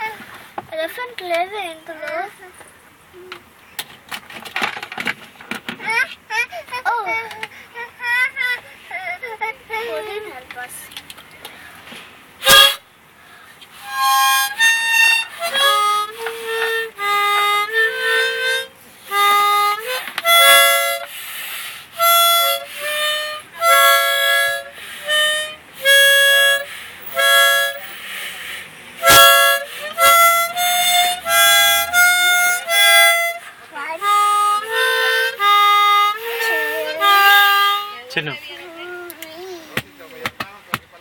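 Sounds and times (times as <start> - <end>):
harmonica notes and chords: 12.4 - 12.9, 13.7 - 39.2.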